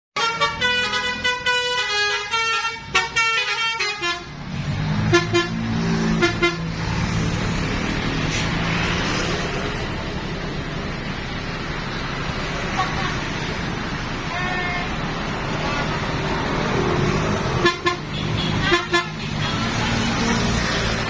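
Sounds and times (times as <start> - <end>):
musical bus horn melody: 0.2 - 4.4, 5.0 - 6.8, 14.3 - 15.0, 17.6 - 20.5
bus engine running: 0.2 - 21.0.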